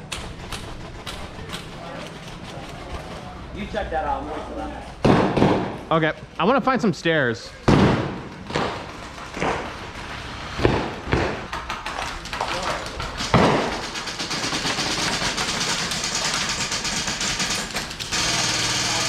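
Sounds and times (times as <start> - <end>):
full-auto airsoft gunfire: 7.7 - 9.7, 10.6 - 11.5, 13.1 - 19.0.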